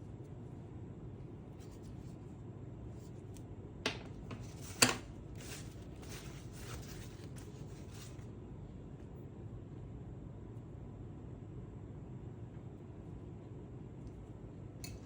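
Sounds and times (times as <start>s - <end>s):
handling and rubbing sounds: 4.2s - 8.3s.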